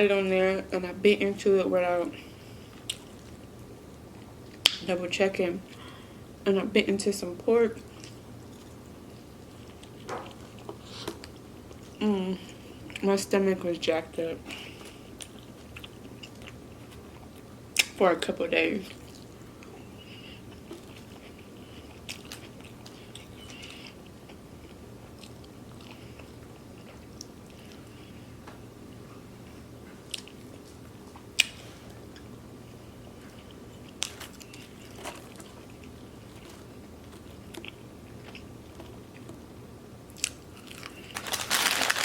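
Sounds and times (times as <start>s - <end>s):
chewing and biting food: 18.9s - 28.0s, 33.0s - 39.5s.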